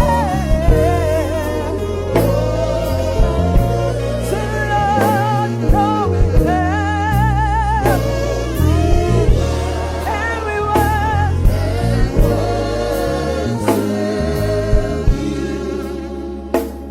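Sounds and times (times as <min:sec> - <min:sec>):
bass and keyboard: 0:00.0 - 0:16.9
person singing with vibrato: 0:00.0 - 0:16.9
drum hits: 0:07.8 - 0:12.9.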